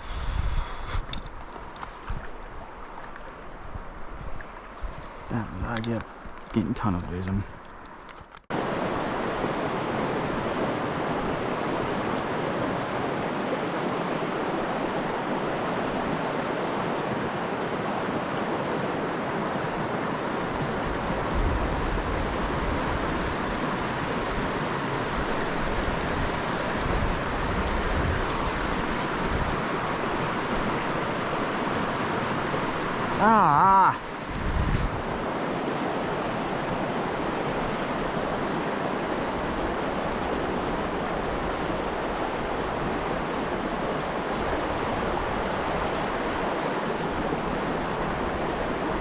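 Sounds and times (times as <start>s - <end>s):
wind rumble on microphone: 0.0s - 6.4s, 19.5s - 33.2s, 33.8s - 49.0s
river water rushing: 8.5s - 49.0s.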